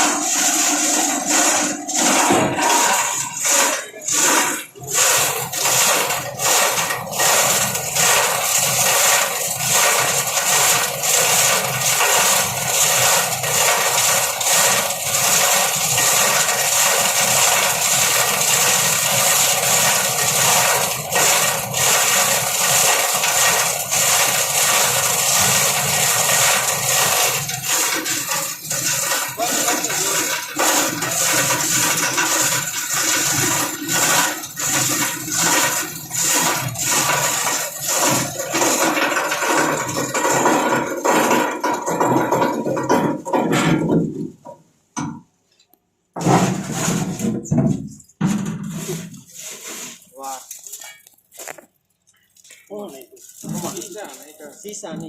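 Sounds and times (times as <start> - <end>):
plastic grinder running: 0.0 - 44.3, 46.2 - 47.4, 52.8 - 55.0.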